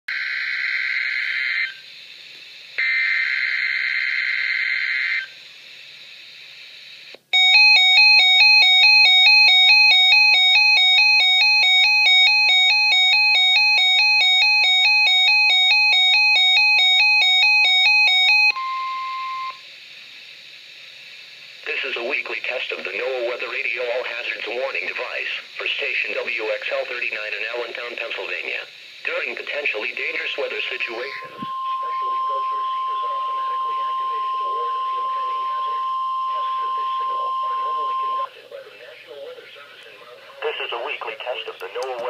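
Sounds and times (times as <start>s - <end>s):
warbling alert alarm: 7.4s - 19.6s, 30.0s - 38.3s
harsh buzzing data bursts: 19.5s - 39.8s
steady alert tone: 30.2s - 38.2s.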